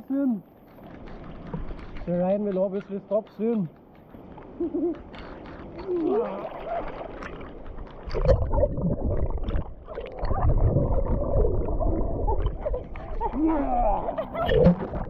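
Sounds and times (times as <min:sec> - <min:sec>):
pool water sloshing and splashing: 0:04.6 - 0:15.0.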